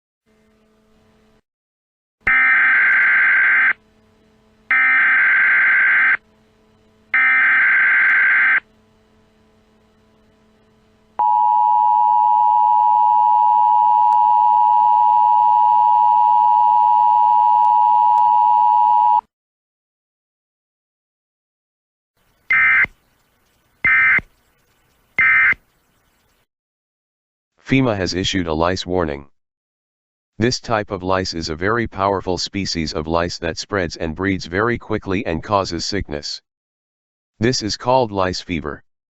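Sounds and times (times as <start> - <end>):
buzzy digital data tones: 4.7 - 12.3, 22.2 - 26.5
two-tone attention signal: 11.2 - 19.2.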